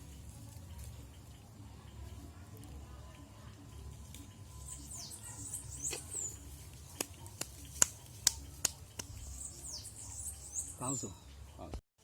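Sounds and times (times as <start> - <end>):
campfire wood crackling: 0.0 - 9.7
small birds chirping: 0.0 - 11.8
sharp pops of fire: 7.0 - 9.2.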